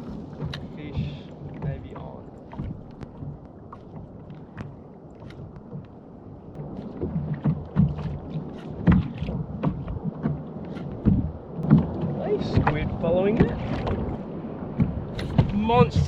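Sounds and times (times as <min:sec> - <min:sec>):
water lapping against kayak: 0:00.0 - 0:16.0
thumps and small clicks: 0:00.4 - 0:00.8, 0:01.5 - 0:06.0.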